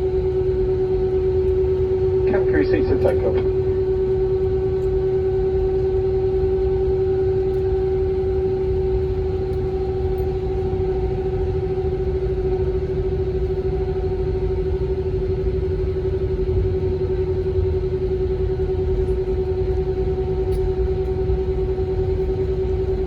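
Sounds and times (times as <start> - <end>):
jet engines idling: 1.6 - 5.4
aircraft cabin hum: 1.6 - 12.8, 14.7 - 23.0.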